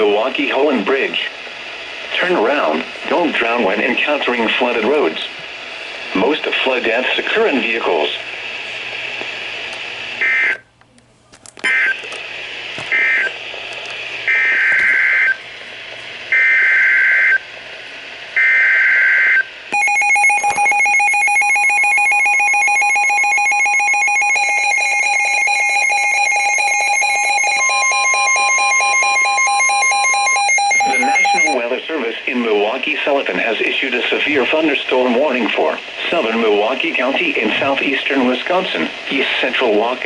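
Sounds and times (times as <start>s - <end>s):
screeching data tone bursts: 18.4s - 31.6s
fast beeping alert alarms: 19.8s - 31.6s
steady alert tone: 26.9s - 31.6s.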